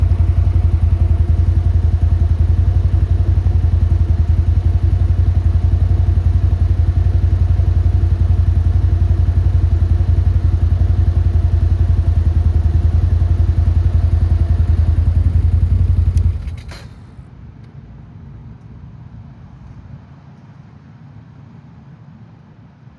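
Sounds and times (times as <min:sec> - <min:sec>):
diesel engine droning: 0:00.0 - 0:17.2.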